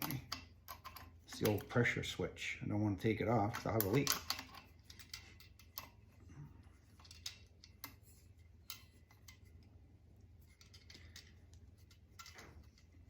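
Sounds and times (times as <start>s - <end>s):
low steady hum: 0.0s - 13.0s
metal fittings clicking: 3.4s - 6.0s, 6.9s - 8.0s, 10.4s - 13.0s.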